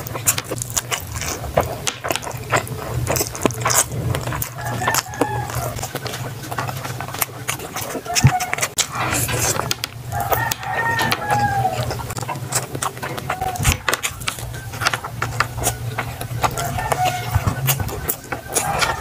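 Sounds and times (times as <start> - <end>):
chewing: 0.0 - 19.0
rooster crowing: 4.5 - 6.0, 10.1 - 12.2, 16.4 - 19.0.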